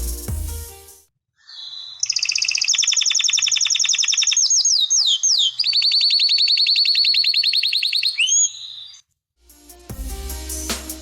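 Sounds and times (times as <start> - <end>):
bird-like chirping phone notification: 1.5 - 9.0.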